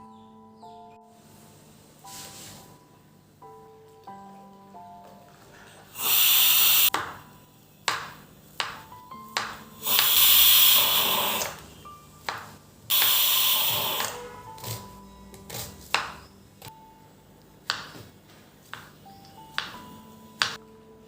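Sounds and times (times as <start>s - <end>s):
soft background music: 0.0s - 21.0s
loud bursts of hissing: 6.0s - 6.9s, 9.8s - 11.6s, 12.9s - 14.2s.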